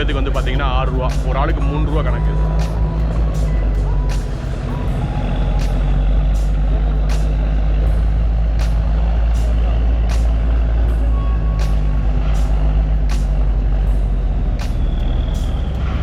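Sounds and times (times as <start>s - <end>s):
diesel engine rumbling: 0.0s - 16.0s.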